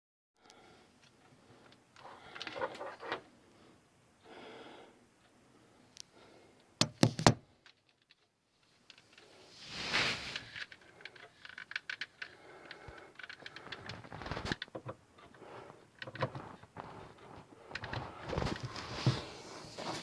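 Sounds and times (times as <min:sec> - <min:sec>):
objects being handled: 0:06.8 - 0:09.4, 0:10.0 - 0:20.0.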